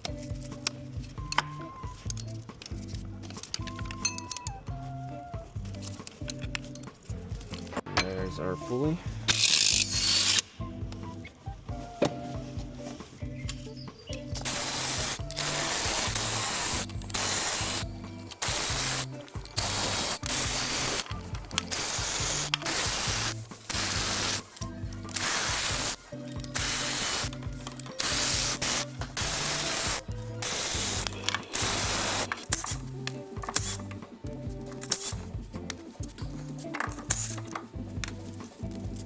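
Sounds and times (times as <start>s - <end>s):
background music: 0.0s - 39.0s
power tool bursts: 14.5s - 32.8s.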